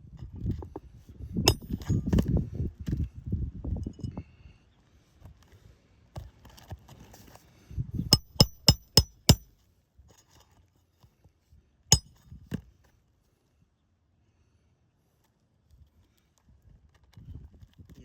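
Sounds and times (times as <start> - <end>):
hammer striking nail: 1.5 - 2.0, 8.1 - 9.5, 11.9 - 12.1.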